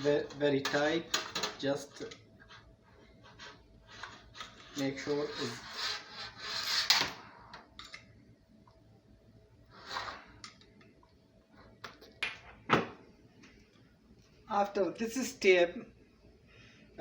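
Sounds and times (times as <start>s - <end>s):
rustling scrape: 3.2s - 7.0s, 9.7s - 10.4s.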